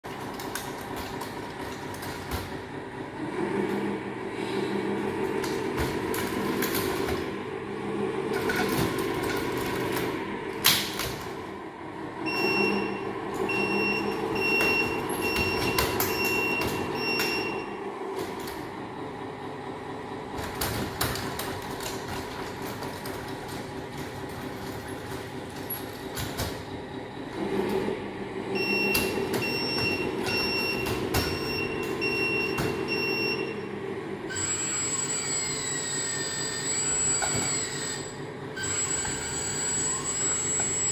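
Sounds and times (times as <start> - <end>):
hydraulic pump and motors whirring: 0.1 - 40.9
tracks clattering and squealing: 34.3 - 40.9.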